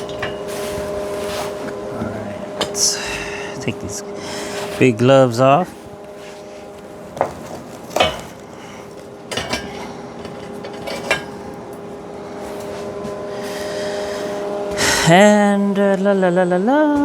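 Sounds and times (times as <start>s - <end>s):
metal tools clinking: 0.0s - 3.0s, 7.2s - 14.3s
steady machine hum: 0.0s - 17.0s.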